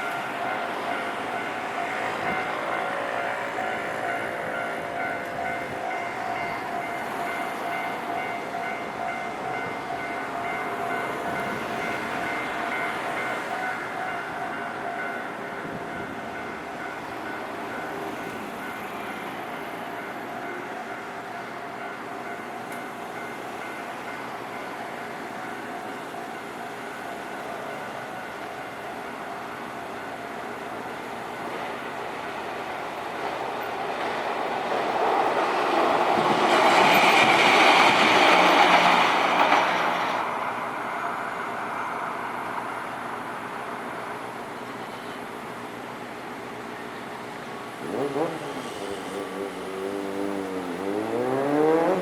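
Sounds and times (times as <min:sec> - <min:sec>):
electric train rumble: 0:00.0 - 0:52.0.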